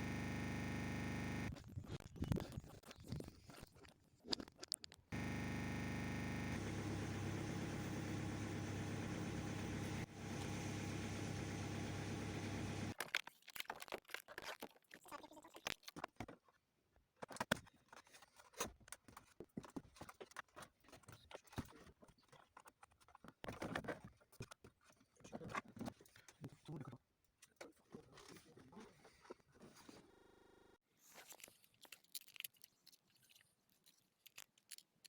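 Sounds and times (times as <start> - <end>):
steady mechanical hum: 0.0 - 1.5, 5.2 - 13.0.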